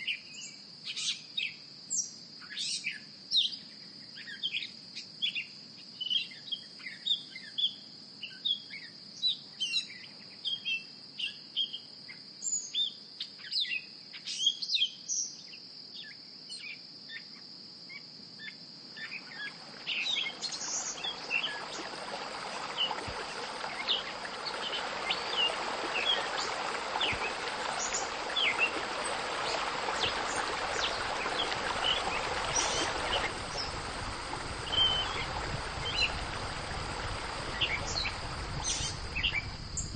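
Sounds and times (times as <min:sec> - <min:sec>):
birds chirping: 0:19.2 - 0:39.9
steady rushing noise: 0:20.9 - 0:39.9.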